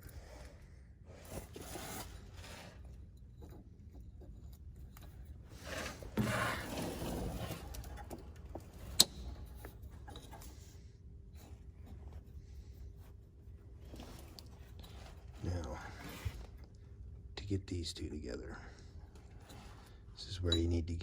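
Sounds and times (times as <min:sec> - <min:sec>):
rubbing and scraping of parts: 0:00.0 - 0:17.2, 0:18.9 - 0:20.6.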